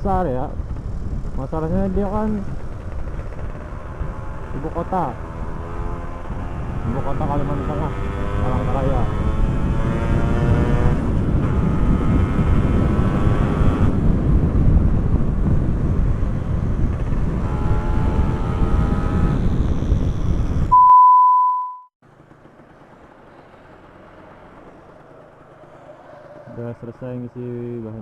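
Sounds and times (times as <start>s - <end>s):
motorcycle engine: 0.0s - 20.7s, 22.0s - 27.8s
wind rushing over microphone: 0.0s - 20.8s
high single-pitch beep: 20.7s - 21.9s.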